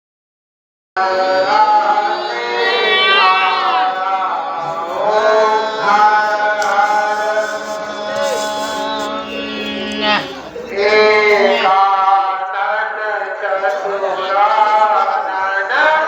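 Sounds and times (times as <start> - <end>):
voices chanting together: 1.0 - 16.0.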